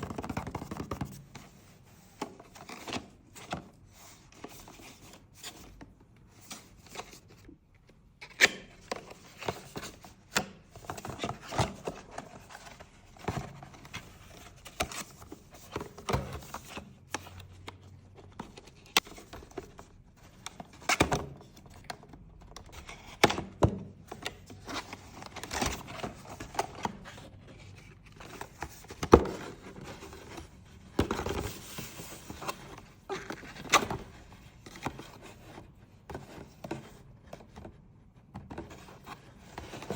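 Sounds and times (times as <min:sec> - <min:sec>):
packaging rustling and scraping: 0:24.1 - 0:37.6.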